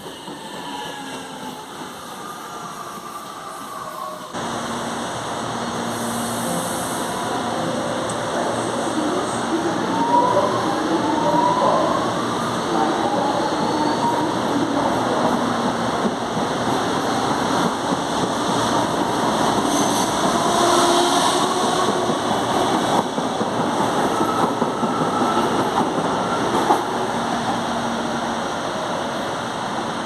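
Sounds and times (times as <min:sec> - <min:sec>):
train wheels rumbling on rails: 0:12.2 - 0:30.0.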